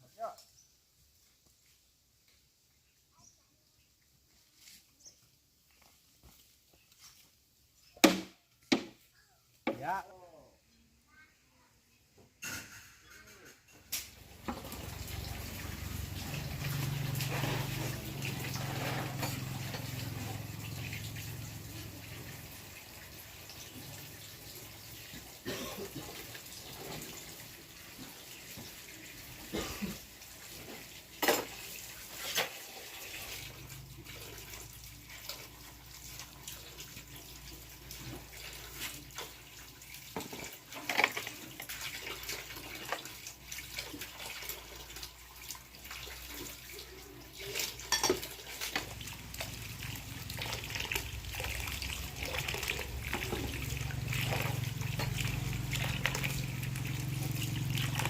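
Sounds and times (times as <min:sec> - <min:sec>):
water running and splashing: 0:14.0 - 0:58.0.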